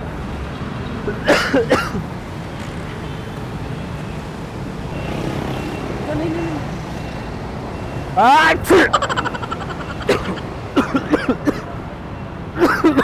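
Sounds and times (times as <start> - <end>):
road traffic rumble: 0.0 - 13.0
short loud vocal sounds: 8.2 - 11.6.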